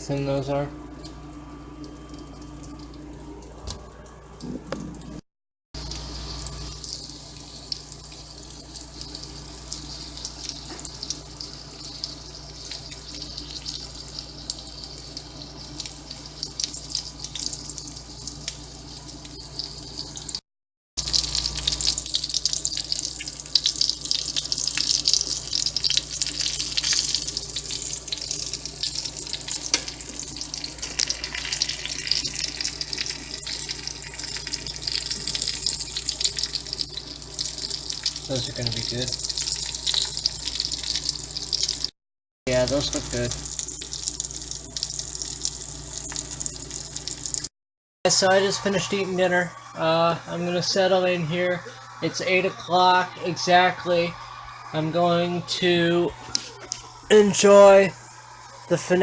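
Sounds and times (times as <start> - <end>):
meat sizzling in a frying pan: 5.8 - 20.4, 21.0 - 41.9, 42.6 - 47.5.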